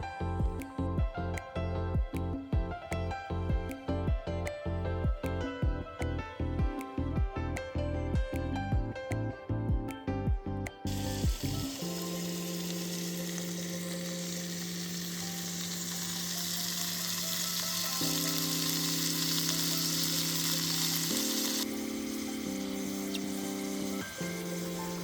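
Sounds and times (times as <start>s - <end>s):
background music: 0.0s - 25.0s
food sizzling in a pan: 10.9s - 25.0s.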